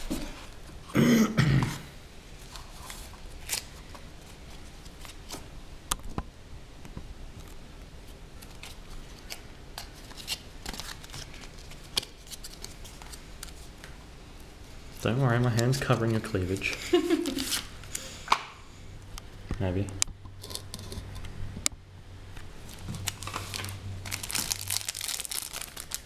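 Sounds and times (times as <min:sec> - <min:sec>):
hands handling packaging: 0:08.4 - 0:13.9, 0:15.4 - 0:18.0, 0:22.6 - 0:26.0.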